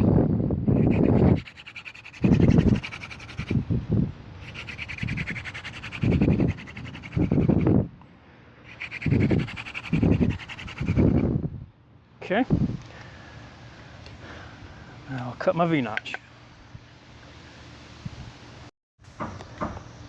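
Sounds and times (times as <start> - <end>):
hand drill spindle rubbing wood: 0.7 - 3.6, 4.4 - 7.8, 8.8 - 11.2.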